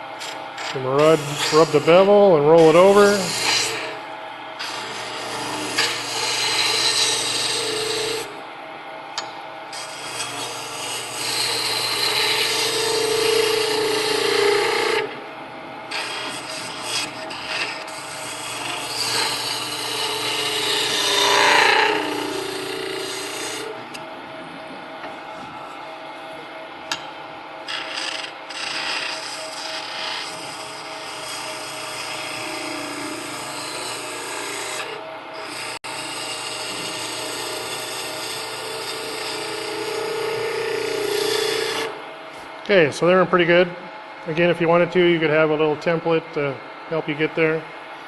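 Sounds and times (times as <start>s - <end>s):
wood lathe spinning: 0.0s - 4.0s, 4.6s - 8.3s, 9.7s - 15.2s, 15.9s - 23.7s, 27.6s - 42.0s
gouge cutting wood: 0.2s - 4.0s, 4.6s - 8.3s, 9.7s - 15.1s, 15.9s - 23.7s, 27.7s - 41.9s.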